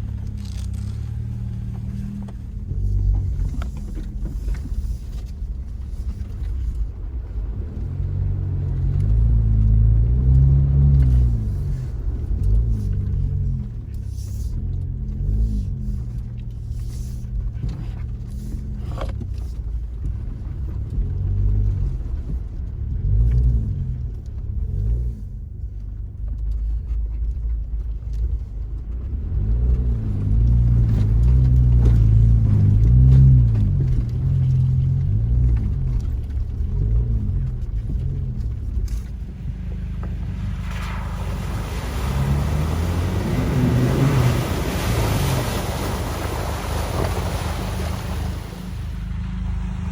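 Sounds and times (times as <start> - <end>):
engine revving under load: 29.3 - 49.9.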